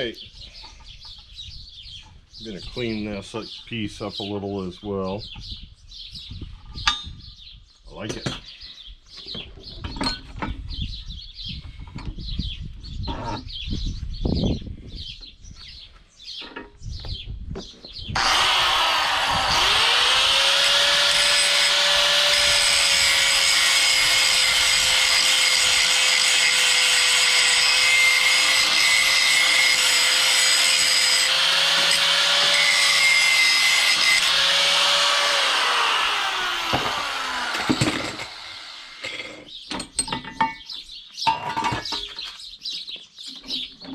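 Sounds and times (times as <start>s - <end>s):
electric grinder grinding steel: 18.2s - 39.4s.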